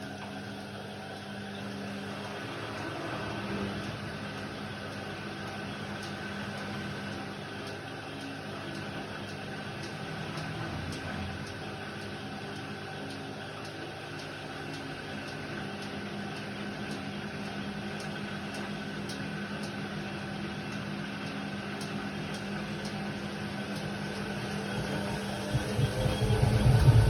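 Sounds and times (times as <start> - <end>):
washer-dryer motor hum: 0.0 - 27.0.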